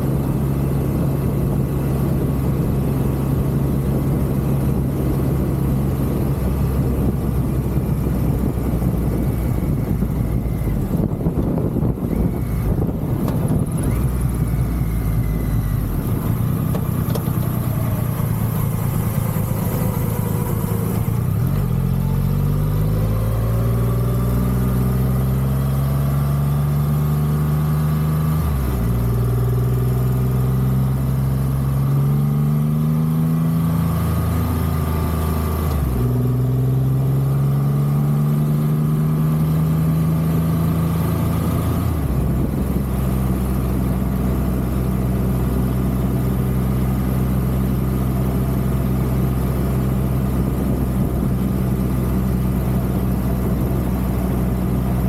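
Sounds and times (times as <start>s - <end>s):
motorcycle engine shifting gears: 0.0s - 26.8s.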